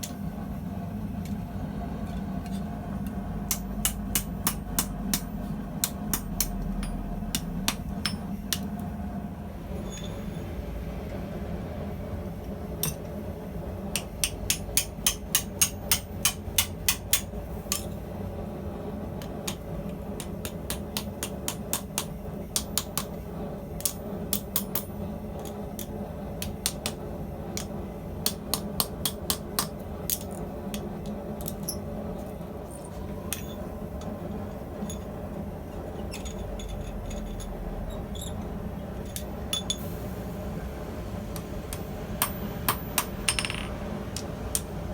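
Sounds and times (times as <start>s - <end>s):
hammer striking steel on anvil: 3.5s - 8.7s, 12.8s - 13.1s, 13.9s - 18.0s, 20.2s - 23.2s, 23.8s - 25.0s, 27.6s - 31.8s, 39.0s - 39.9s, 41.7s - 44.7s.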